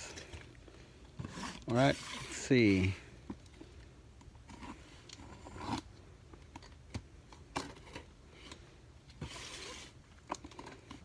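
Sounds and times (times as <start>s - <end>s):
cardboard scraping rasp: 1.2s - 2.5s, 9.2s - 10.0s.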